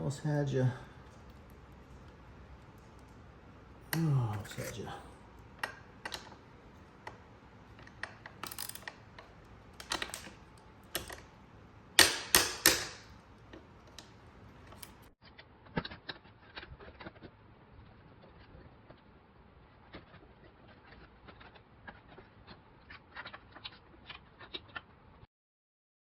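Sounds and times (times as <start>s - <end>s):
clicks and taps of hand work: 12.0s - 15.1s.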